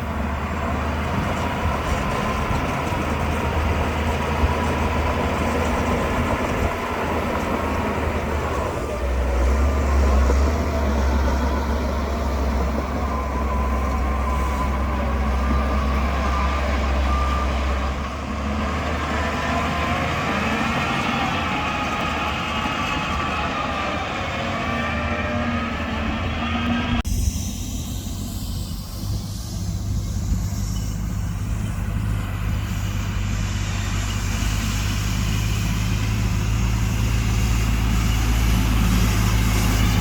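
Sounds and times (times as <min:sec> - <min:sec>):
bulldozer diesel engine hum: 0:00.0 - 0:40.0.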